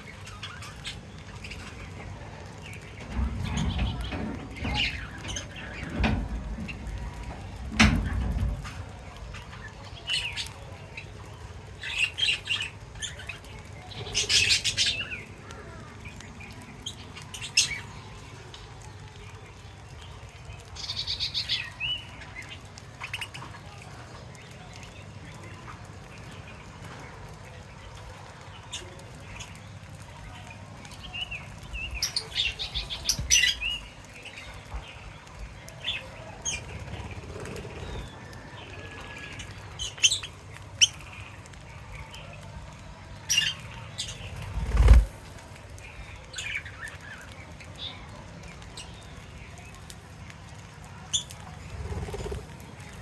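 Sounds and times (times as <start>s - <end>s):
small birds chirping: 0.0s - 53.0s
wings flapping: 36.4s - 38.4s, 43.5s - 45.6s, 51.2s - 53.0s.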